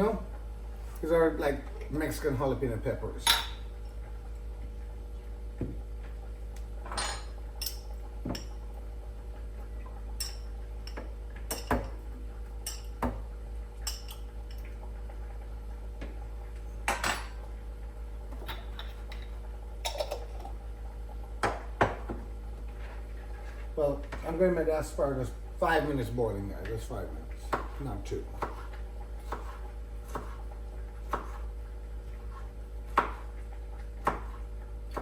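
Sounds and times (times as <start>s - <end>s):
steady low hum: 0.0s - 35.0s
dishes and utensils clinking: 6.9s - 8.5s, 18.4s - 20.5s.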